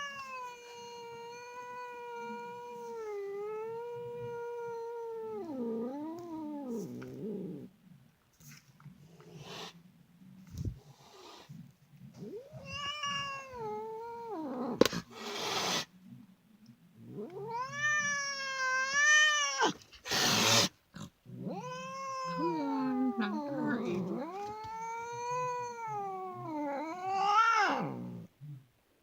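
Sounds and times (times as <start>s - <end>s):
cat yowling: 0.0s - 6.8s, 12.2s - 14.8s, 17.2s - 20.7s, 21.4s - 28.1s
cat hissing: 8.5s - 9.8s, 10.5s - 16.0s, 17.1s - 28.2s.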